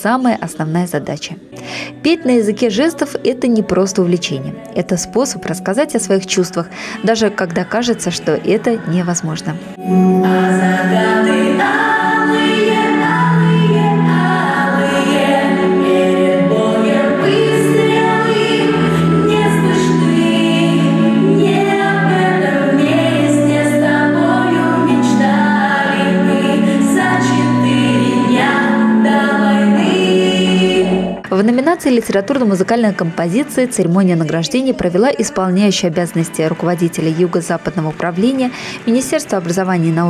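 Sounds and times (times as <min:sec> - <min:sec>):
choir singing: 0:02.1 - 0:31.3
instrumental accompaniment with bass: 0:09.2 - 0:33.0.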